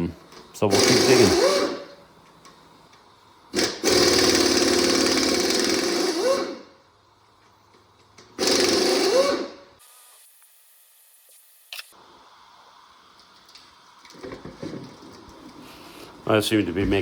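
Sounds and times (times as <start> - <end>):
power wrench whirring: 0.7 - 2.0, 3.5 - 6.7, 8.3 - 9.6.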